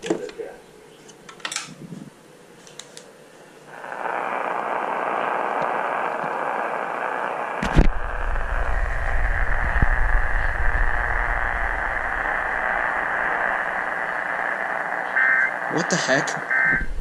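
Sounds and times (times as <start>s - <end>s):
radio static hiss: 3.1s - 17.0s
faint clicks: 5.4s - 6.5s
low rumble: 7.6s - 15.7s.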